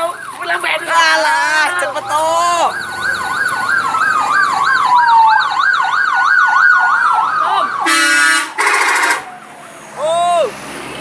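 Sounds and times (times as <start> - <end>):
bus electronic horn warbling: 7.8 - 9.3
loud air horn blast: 7.8 - 9.3.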